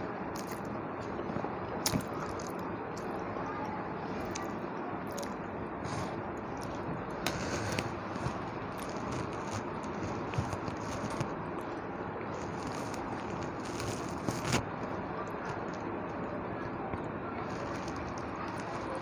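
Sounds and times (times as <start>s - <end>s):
chewing clicks and crackles: 0.3s - 3.1s, 6.0s - 19.0s
food being handled: 5.9s - 11.5s, 12.3s - 14.9s.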